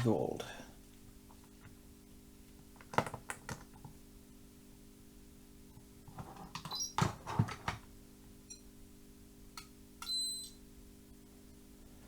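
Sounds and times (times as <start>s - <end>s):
short high-pitched meter beep: 10.0s - 10.6s.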